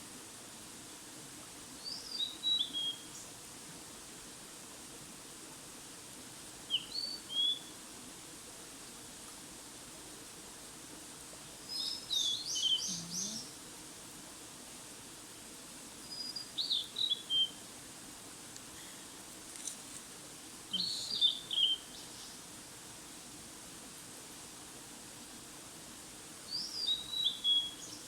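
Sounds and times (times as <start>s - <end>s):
faint steady hiss: 0.0s - 28.0s
songbird singing: 1.8s - 3.3s, 6.7s - 7.7s, 11.7s - 13.6s, 16.1s - 17.6s, 20.7s - 22.4s, 26.5s - 28.0s.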